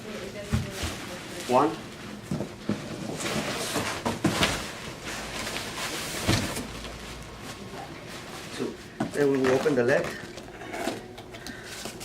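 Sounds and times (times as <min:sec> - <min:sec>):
furniture parts knocking and thumping: 0:02.3 - 0:04.7, 0:06.2 - 0:06.7
packaging rustling: 0:02.6 - 0:12.0.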